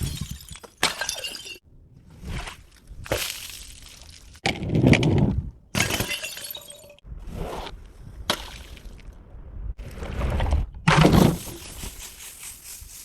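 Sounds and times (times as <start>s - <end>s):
glass bottles shattering: 0.0s - 1.6s, 5.8s - 7.0s.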